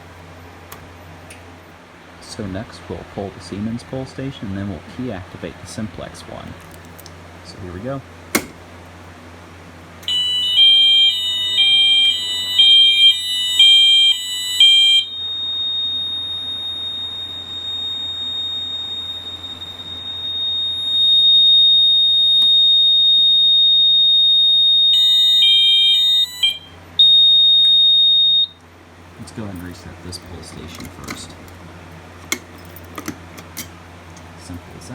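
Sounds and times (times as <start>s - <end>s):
fire alarm horn high-low tone: 10.0s - 28.6s
steady high-pitched sounder tone: 10.0s - 28.6s.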